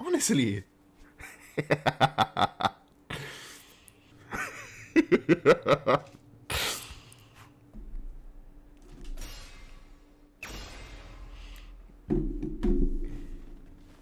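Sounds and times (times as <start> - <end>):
person laughing: 1.2 - 3.4, 4.2 - 6.2
breathy exhales: 6.5 - 7.6.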